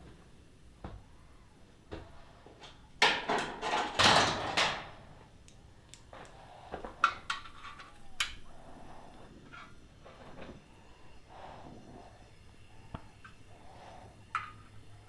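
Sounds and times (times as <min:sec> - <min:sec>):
clicks and knocks of parts: 0:02.6 - 0:08.4
scraping and rustling: 0:06.1 - 0:12.2.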